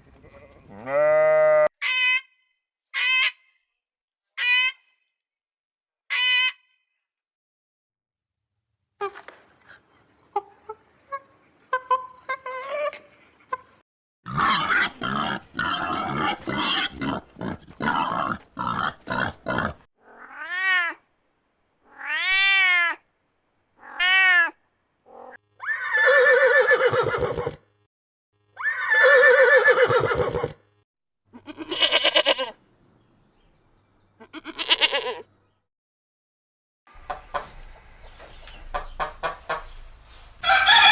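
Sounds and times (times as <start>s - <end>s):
cat meowing: 20.0s - 21.0s, 21.9s - 23.0s, 23.8s - 25.9s
quavering animal calls: 25.1s - 27.6s.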